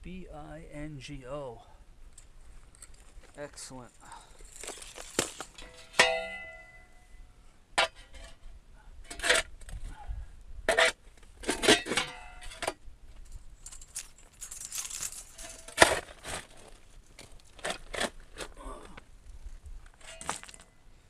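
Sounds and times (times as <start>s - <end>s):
metal clanks and clinks: 4.4s - 7.0s, 13.3s - 16.0s, 20.0s - 20.8s.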